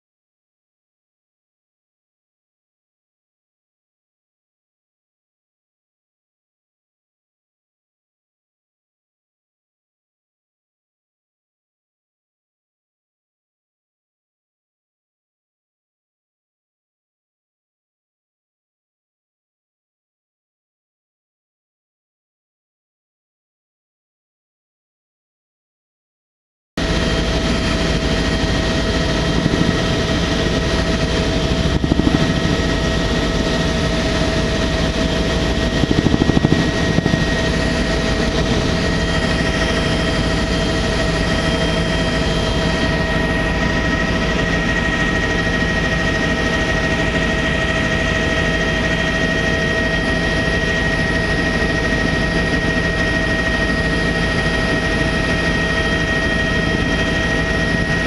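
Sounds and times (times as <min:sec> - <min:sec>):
helicopter rotor noise: 0:26.8 - 0:58.0
helicopter turbine whine: 0:26.8 - 0:58.0.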